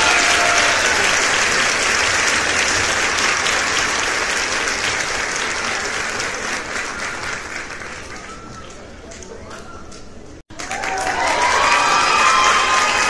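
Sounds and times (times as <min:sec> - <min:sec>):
audience applauding: 0:00.0 - 0:08.9, 0:10.5 - 0:13.0.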